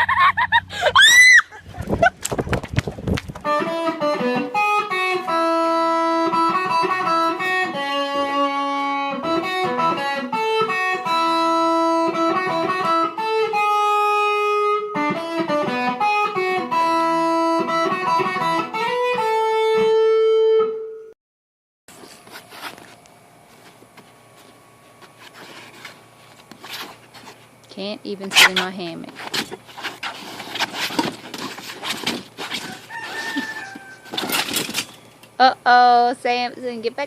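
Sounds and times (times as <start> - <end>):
plucked guitar melody: 3.4 - 21.1.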